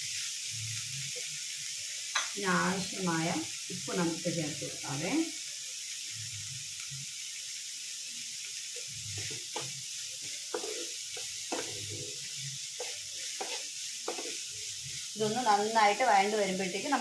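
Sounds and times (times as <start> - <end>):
onions sizzling in hot oil: 0.0 - 17.0
spatula scraping pan: 8.8 - 16.0.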